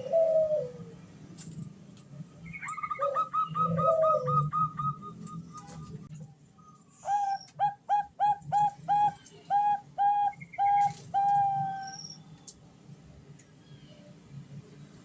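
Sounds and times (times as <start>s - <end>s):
dove cooing: 0.0s - 1.0s, 2.6s - 5.9s, 7.0s - 12.0s.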